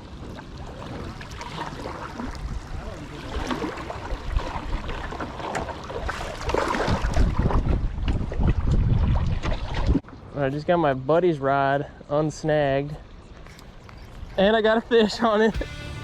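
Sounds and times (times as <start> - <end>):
creek water running: 0.0 - 7.4
wind rumble on microphone: 2.1 - 10.0.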